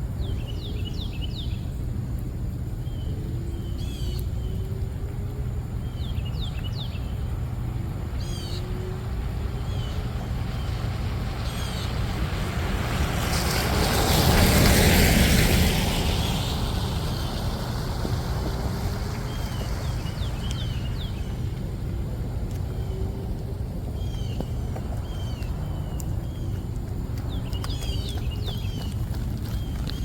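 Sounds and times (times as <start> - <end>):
low outdoor rumble: 0.0 - 30.0
birds chirping: 2.7 - 12.4, 14.2 - 30.0
vehicle tyres hissing on wet road: 9.6 - 22.9.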